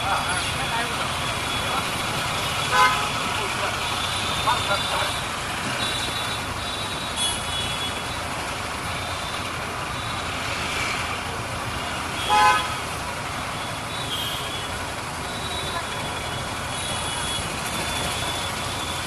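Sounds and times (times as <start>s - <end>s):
road traffic noise: 0.0s - 19.0s
vehicle horn: 2.7s - 3.3s, 5.8s - 8.0s, 12.2s - 12.9s, 13.9s - 14.8s.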